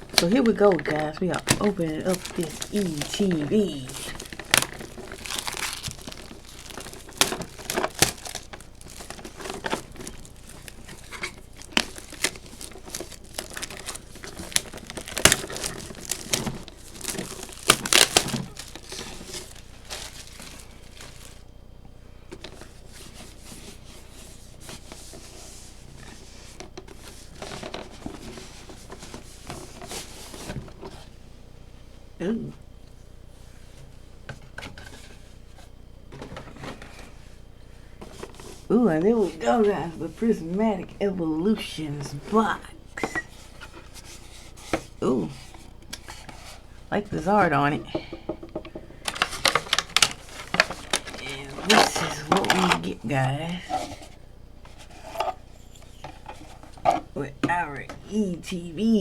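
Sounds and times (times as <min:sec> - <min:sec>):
plastic wrap crinkling and tearing: 0:00.0 - 0:21.5, 0:49.0 - 0:53.0.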